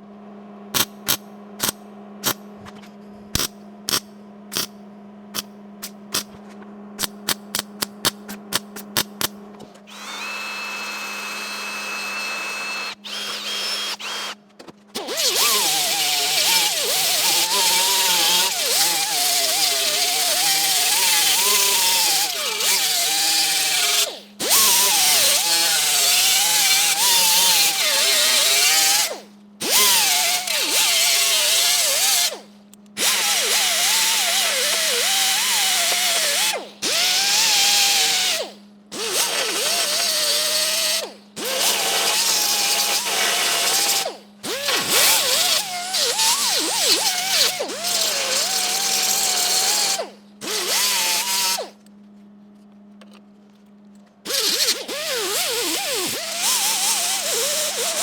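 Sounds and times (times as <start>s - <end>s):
power tool working on metal: 9.9s - 14.4s, 15.0s - 51.8s, 54.3s - 58.0s.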